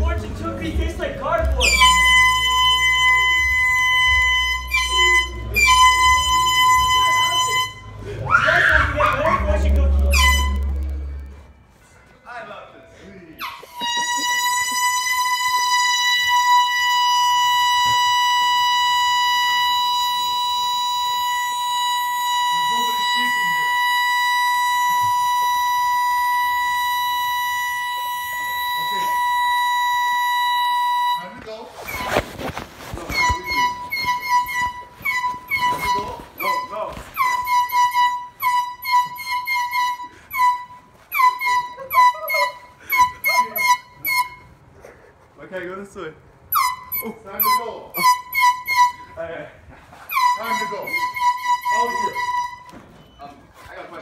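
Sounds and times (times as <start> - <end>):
air horn blast: 9.6 - 11.6, 13.8 - 38.6.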